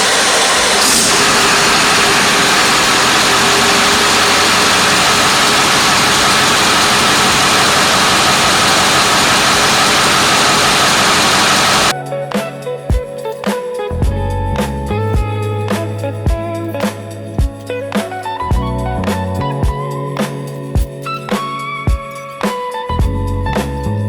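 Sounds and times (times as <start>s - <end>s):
diesel engine idling: 0.0s - 11.9s.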